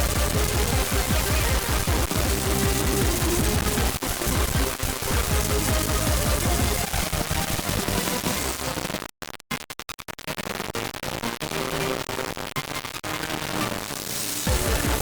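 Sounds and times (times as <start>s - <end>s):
harsh distorted electronic noise: 0.0s - 15.0s.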